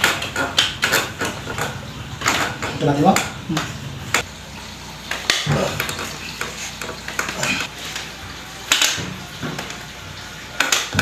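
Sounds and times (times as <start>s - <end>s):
sharp knocks and clicks: 0.0s - 4.3s.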